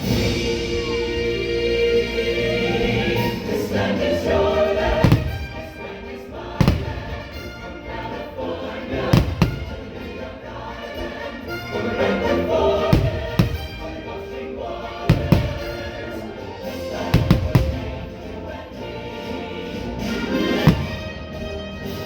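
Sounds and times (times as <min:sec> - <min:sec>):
choral and orchestral music: 0:00.0 - 0:22.0
firework shells bursting: 0:04.7 - 0:08.2, 0:08.9 - 0:10.2, 0:12.8 - 0:14.2, 0:15.0 - 0:18.4, 0:20.0 - 0:21.4.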